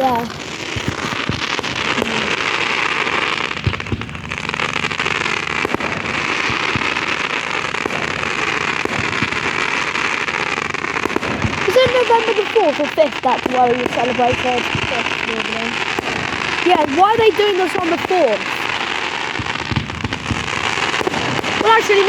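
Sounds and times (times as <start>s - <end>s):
crackling fireworks: 0.0s - 22.0s.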